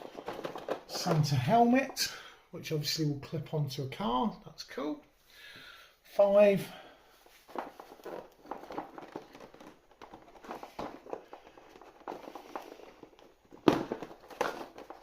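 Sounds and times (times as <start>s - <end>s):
plastic packaging crinkling: 0.0s - 1.4s, 7.4s - 15.0s.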